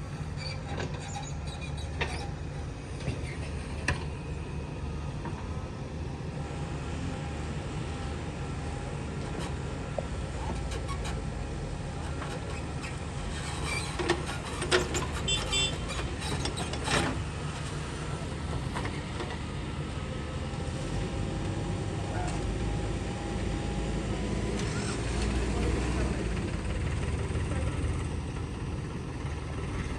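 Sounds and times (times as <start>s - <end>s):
diesel machinery running: 0.0s - 29.9s
short squeaks: 0.3s - 2.4s, 12.5s - 17.1s.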